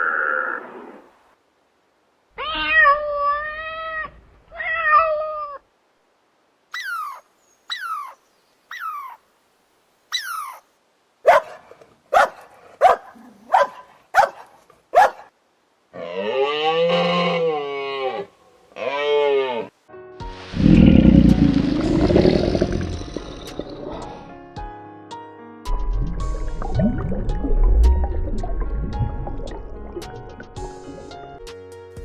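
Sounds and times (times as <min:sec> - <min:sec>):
cat meowing: 0:02.4 - 0:05.6.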